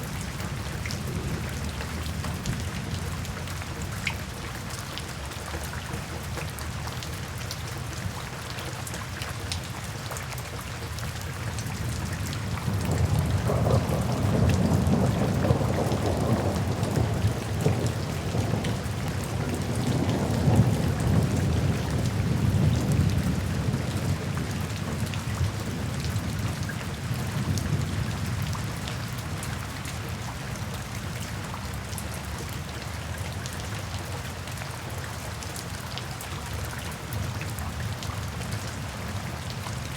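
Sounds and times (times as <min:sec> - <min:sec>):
steady rain: 0:00.0 - 0:39.9
rolling thunder: 0:12.5 - 0:25.0.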